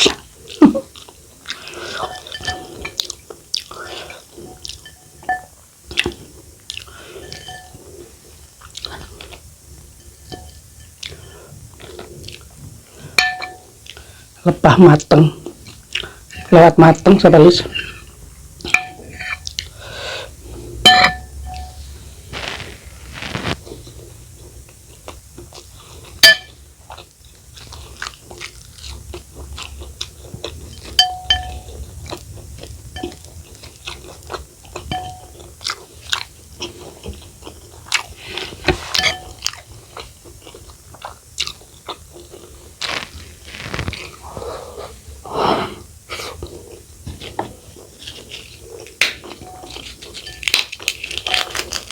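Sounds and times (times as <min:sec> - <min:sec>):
chewing and crunching: 0:00.0 - 0:05.2, 0:11.0 - 0:13.2, 0:15.4 - 0:16.5, 0:22.4 - 0:45.1, 0:46.1 - 0:51.9
spoon tapping a plate: 0:04.8 - 0:05.5, 0:13.2 - 0:13.6, 0:20.9 - 0:21.8, 0:31.0 - 0:31.6, 0:34.9 - 0:35.3.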